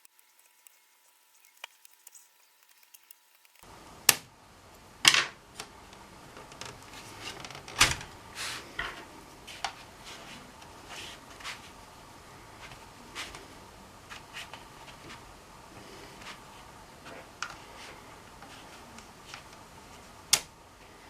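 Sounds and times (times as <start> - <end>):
tools and plastic parts clicking: 0.0 - 3.6.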